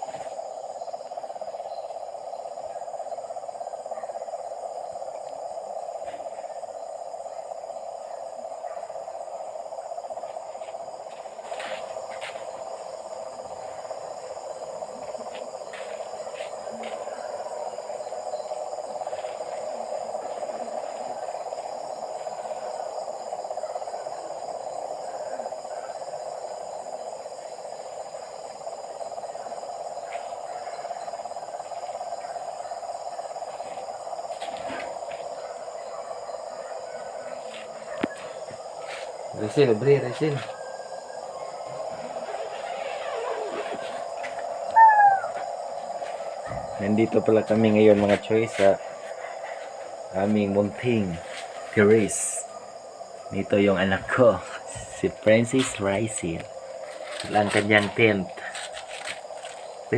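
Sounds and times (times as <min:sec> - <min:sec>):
frogs chorus: 0:00.0 - 0:59.9
high-pitched insect calls: 0:00.0 - 0:59.9.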